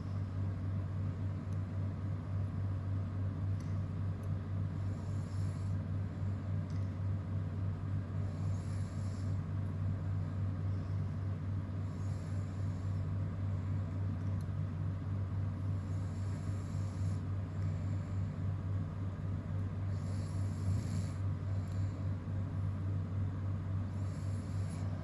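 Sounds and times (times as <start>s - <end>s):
steady low hum: 0.0s - 25.0s
slow breathing of sleeping man: 4.7s - 6.0s, 8.1s - 9.7s, 10.5s - 13.8s, 15.5s - 18.5s, 19.8s - 22.4s, 23.7s - 25.0s.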